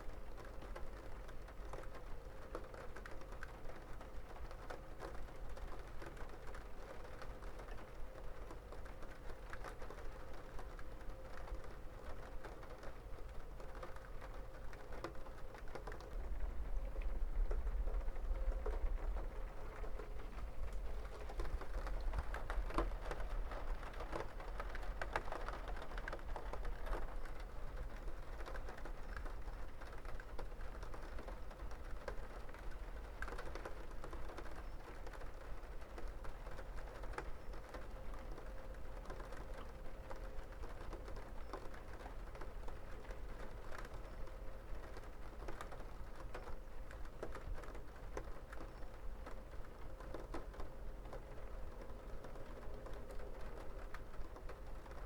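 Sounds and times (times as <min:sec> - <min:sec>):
raindrops tapping on hard surface: 0:00.7 - 0:55.0.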